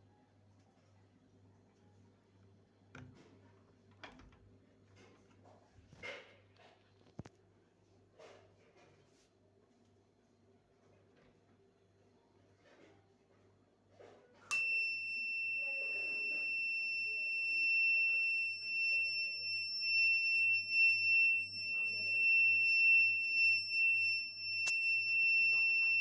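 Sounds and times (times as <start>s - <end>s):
alarm switch click: 14.5s - 15.1s, 21.9s - 26.0s
high-pitched alarm tone: 14.5s - 26.0s.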